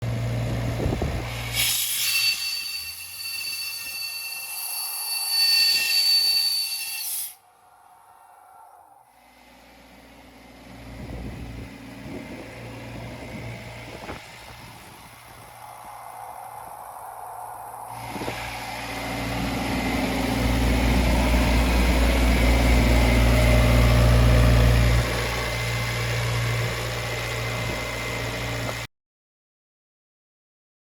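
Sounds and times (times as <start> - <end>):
diesel engine rumbling: 0.0 - 1.5, 9.4 - 28.9.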